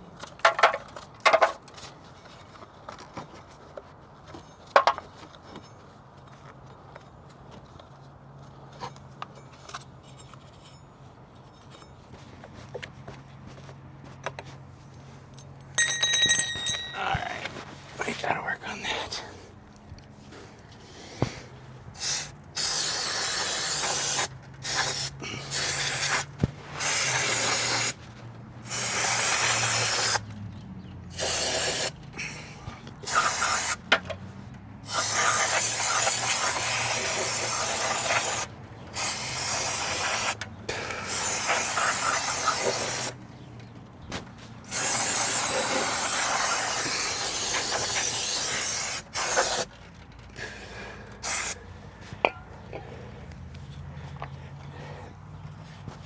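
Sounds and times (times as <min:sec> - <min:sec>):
aerosol spray hissing: 0:44.7 - 0:49.6.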